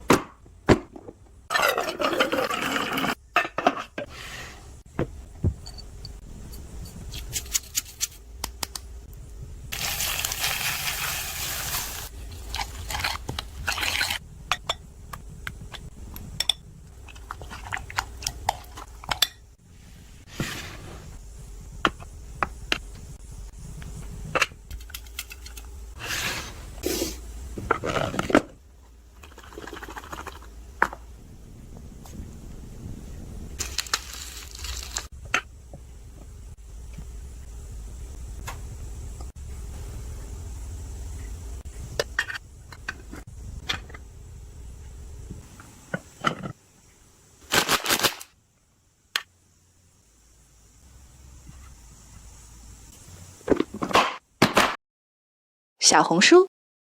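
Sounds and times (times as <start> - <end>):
liquid pouring or hissing: 9.7 - 14.2, 29.1 - 30.6.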